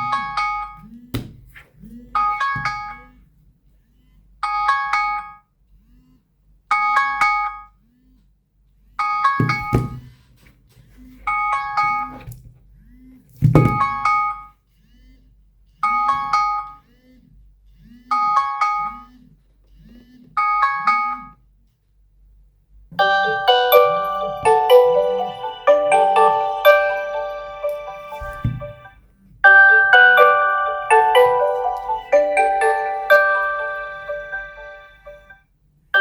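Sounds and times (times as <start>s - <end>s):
phone alarm chimes: 23.0s - 35.3s.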